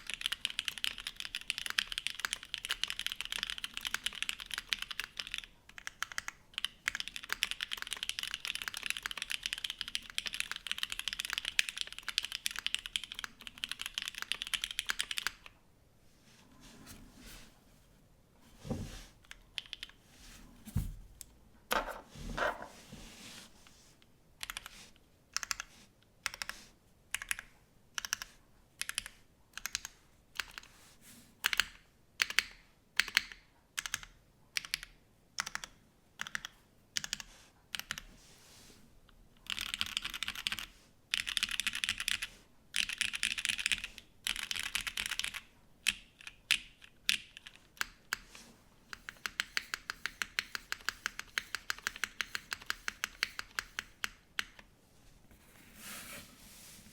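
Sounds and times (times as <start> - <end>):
mechanical keyboard typing: 0.0 - 15.5, 27.1 - 30.7, 31.4 - 38.0, 39.4 - 48.2, 48.9 - 54.6.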